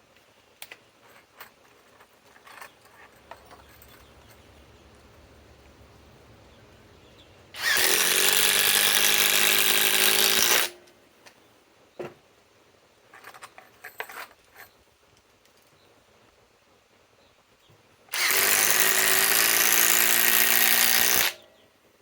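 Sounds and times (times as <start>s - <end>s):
impact driver hammering screw: 7.6s - 10.8s, 18.1s - 21.4s.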